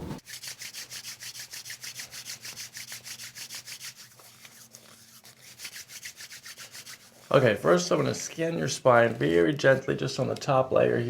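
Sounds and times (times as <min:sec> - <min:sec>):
rapid rhythmic rubbing: 0:00.2 - 0:10.2.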